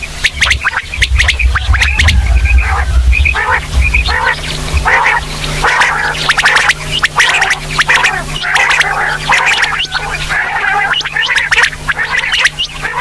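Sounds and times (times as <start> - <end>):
low rumble: 0.0 - 10.4
quail calling: 0.0 - 13.0.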